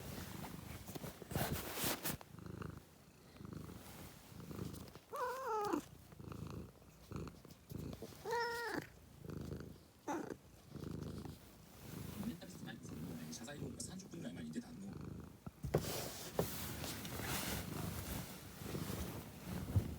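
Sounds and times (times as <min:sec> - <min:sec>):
cat purring: 0:00.0 - 0:19.9
cat meowing: 0:05.1 - 0:05.8, 0:08.2 - 0:08.9.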